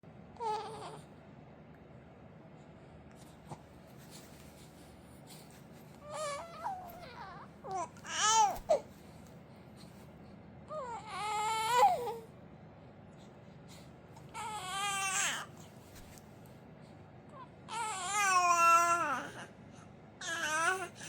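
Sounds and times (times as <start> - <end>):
infant crying: 6.0 - 8.8, 10.7 - 12.3, 14.3 - 15.6, 17.4 - 19.5, 20.2 - 21.0.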